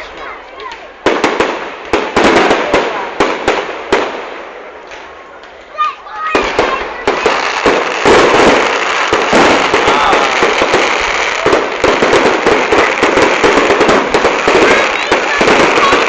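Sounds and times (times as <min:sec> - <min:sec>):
fireworks banging and crackling: 0:00.0 - 0:16.0.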